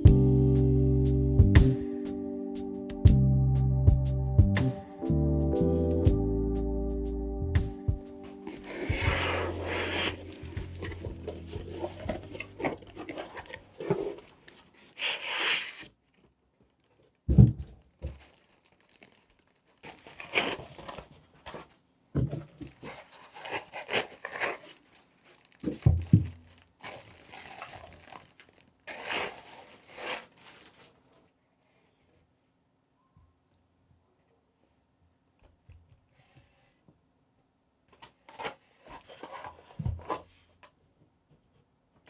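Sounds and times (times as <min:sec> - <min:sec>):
packaging crinkling and tearing: 0:08.2 - 0:17.1, 0:17.8 - 0:21.8, 0:22.5 - 0:31.0.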